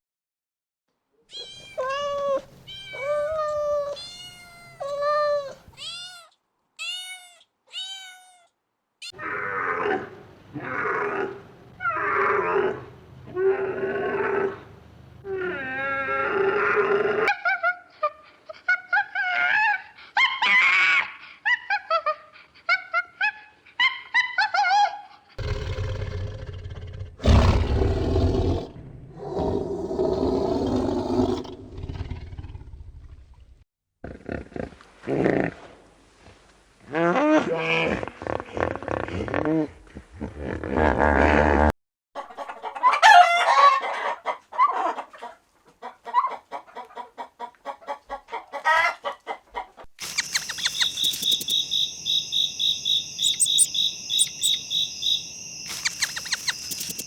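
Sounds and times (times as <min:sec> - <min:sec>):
harsh noisy animal calls: 0:50.0 - 0:57.0
repeated pitched animal cries: 0:50.0 - 0:57.0
short animal calls: 0:50.0 - 0:57.0.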